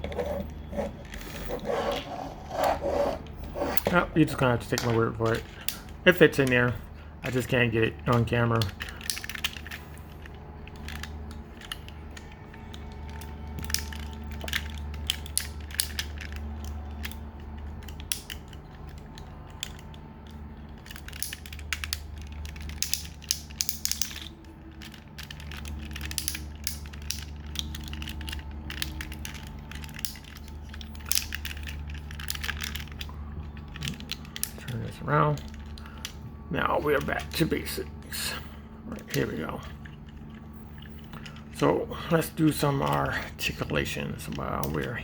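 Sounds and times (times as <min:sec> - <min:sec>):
low steady hum: 0:00.0 - 0:45.0
plastic action figure clicking: 0:20.8 - 0:33.0.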